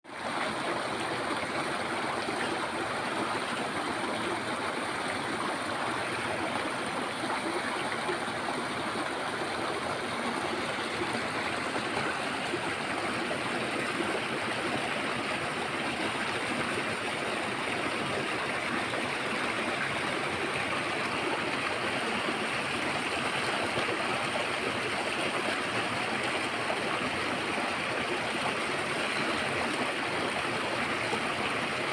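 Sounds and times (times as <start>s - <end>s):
stream water flowing: 0.1s - 31.9s.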